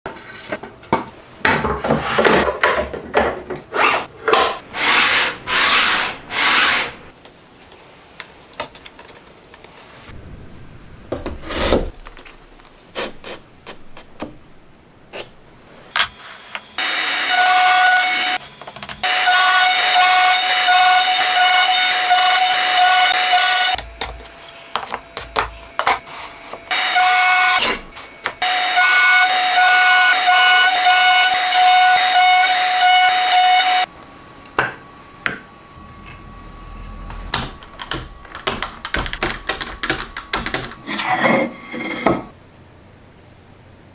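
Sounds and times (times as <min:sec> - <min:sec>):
hand sawing wood: 0:04.8 - 0:07.0
power tool whining: 0:16.8 - 0:18.4, 0:19.0 - 0:33.9.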